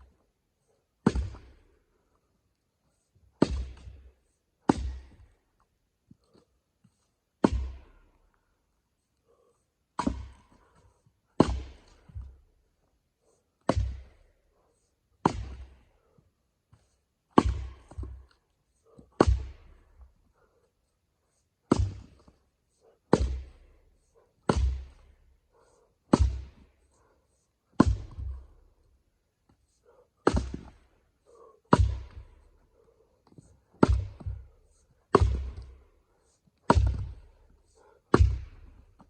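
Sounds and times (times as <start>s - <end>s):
axe striking firewood: 3.4s - 4.0s, 4.7s - 5.2s, 7.4s - 8.0s, 10.0s - 10.4s, 11.4s - 12.2s, 13.7s - 14.2s, 15.2s - 15.8s, 17.4s - 18.2s, 19.2s - 19.8s, 21.7s - 22.2s, 23.1s - 23.6s, 24.5s - 25.1s, 26.1s - 26.7s, 27.8s - 28.4s, 30.2s - 30.8s, 31.7s - 32.4s, 33.8s - 34.5s, 35.1s - 35.8s, 36.7s - 37.4s, 38.1s - 38.8s.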